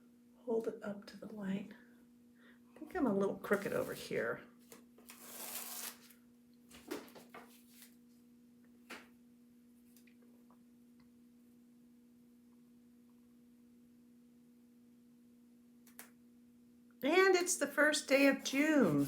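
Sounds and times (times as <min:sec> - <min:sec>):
faint electrical hum: 0:00.0 - 0:19.0
rustle of craft materials: 0:03.5 - 0:08.2, 0:18.1 - 0:19.0.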